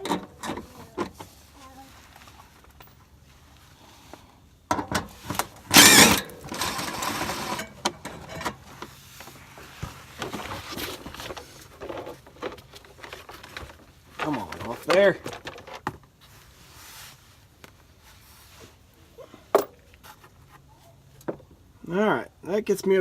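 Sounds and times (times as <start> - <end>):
plastic tray rattling and scraping: 10.1 - 16.0.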